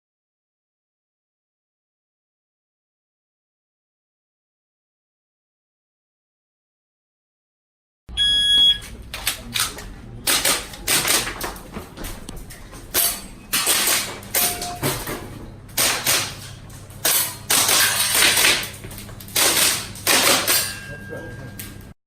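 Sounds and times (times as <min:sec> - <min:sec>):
shot timer beep: 0:08.1 - 0:08.9, 0:14.4 - 0:15.0
airsoft pistol shots: 0:15.8 - 0:16.4, 0:19.4 - 0:20.7.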